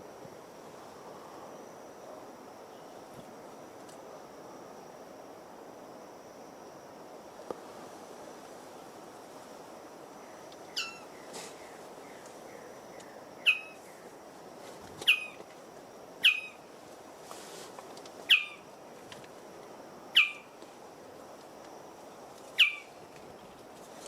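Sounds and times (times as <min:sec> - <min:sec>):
faint steady hiss: 0:00.0 - 0:24.0
bird calling: 0:10.7 - 0:14.1, 0:15.0 - 0:15.4, 0:16.2 - 0:16.6, 0:18.3 - 0:18.6, 0:20.2 - 0:20.5, 0:22.6 - 0:22.9.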